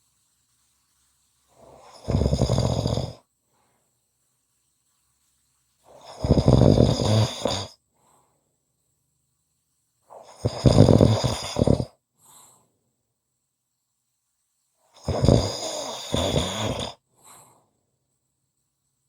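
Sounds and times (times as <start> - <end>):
person snoring loudly: 1.6 - 3.2, 5.9 - 7.7, 10.2 - 11.9, 15.0 - 17.0.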